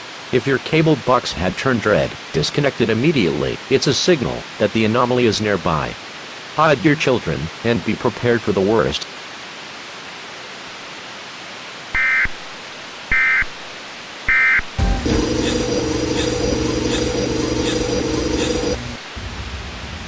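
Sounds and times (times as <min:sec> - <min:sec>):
warbling data bursts: 0:14.8 - 0:19.2
droning steady tones: 0:14.8 - 0:19.9.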